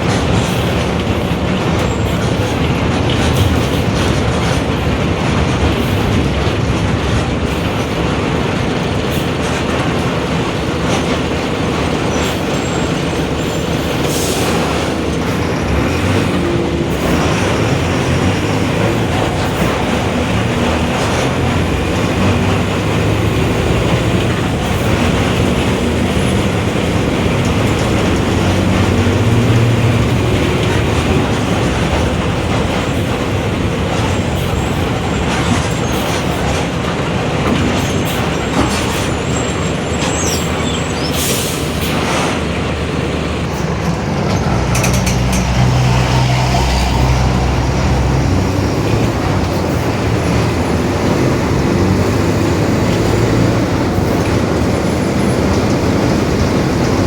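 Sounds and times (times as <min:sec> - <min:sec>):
diesel bus engine running: 0:00.0 - 0:57.0
road and cabin noise: 0:00.0 - 0:57.0.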